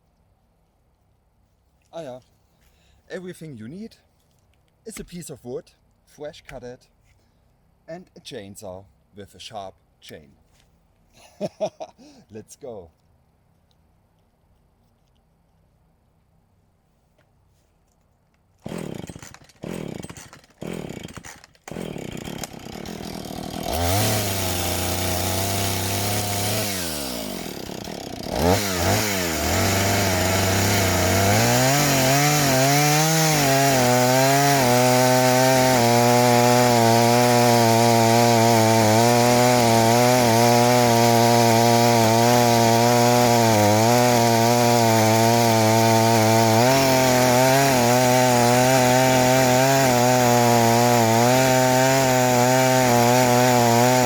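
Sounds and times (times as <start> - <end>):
chainsaw cutting log: 18.6 - 54.0
chainsaw engine revving: 18.6 - 54.0
chainsaw starter cord pulls: 18.6 - 54.0.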